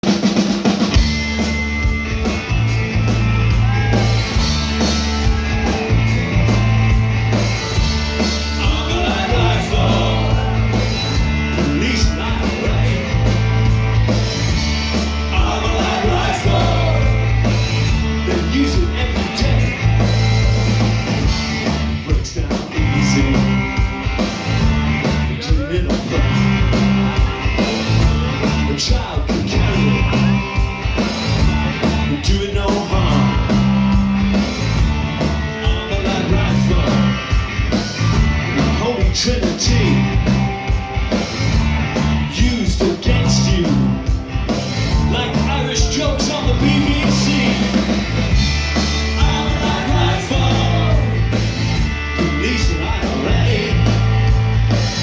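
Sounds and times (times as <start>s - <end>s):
heavy bass riff: 0.0s - 55.0s
rock band playing: 0.0s - 55.0s
person singing: 8.4s - 13.4s, 15.2s - 17.3s, 22.1s - 23.6s, 45.0s - 48.0s, 49.0s - 51.4s.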